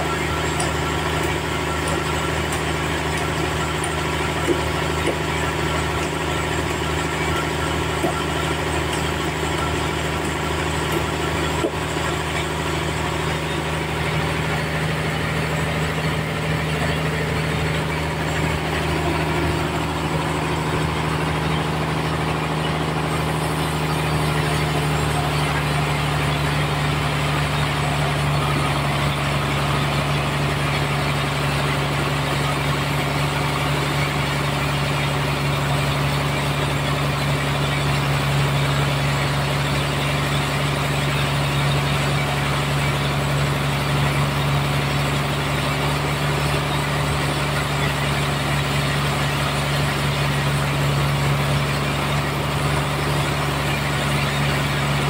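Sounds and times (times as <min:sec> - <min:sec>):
band sawmill sawing log: 0:00.0 - 0:55.0.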